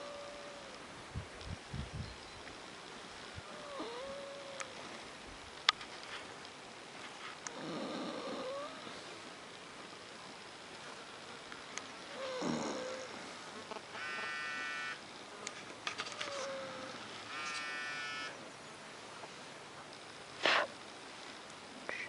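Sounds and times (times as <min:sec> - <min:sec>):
pet snoring: 0:03.5 - 0:04.7, 0:07.5 - 0:09.0, 0:12.1 - 0:13.3.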